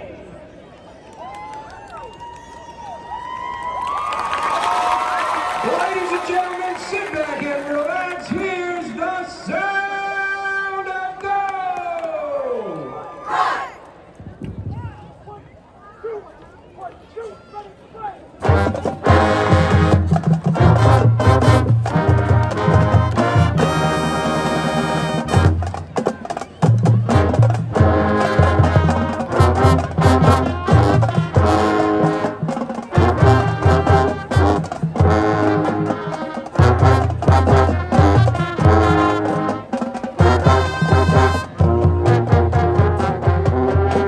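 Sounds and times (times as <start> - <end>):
marching band brass: 4.3 - 11.0, 18.4 - 44.0
drums beating: 18.4 - 44.0.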